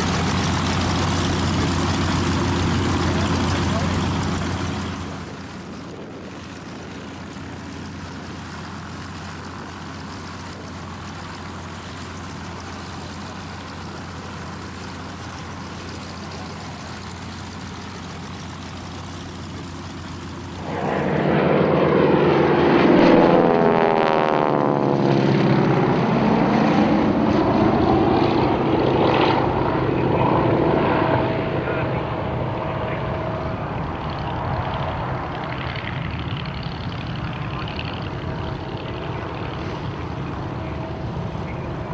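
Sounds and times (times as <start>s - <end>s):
aircraft passing close by: 0.0s - 41.9s
aircraft radial engines droning: 0.0s - 41.9s.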